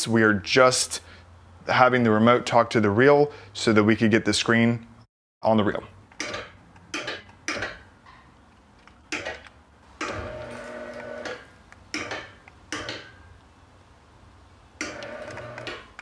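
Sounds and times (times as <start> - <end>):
sharp clicks and knocks: 6.1 - 13.2
motor humming: 10.0 - 11.4, 14.9 - 15.8.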